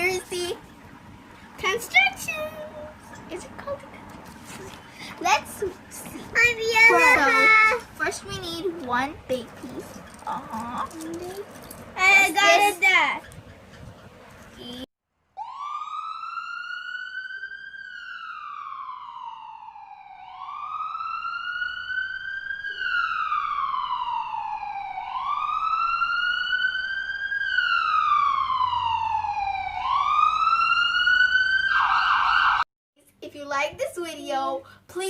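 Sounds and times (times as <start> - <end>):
wailing emergency siren: 15.4 - 32.7.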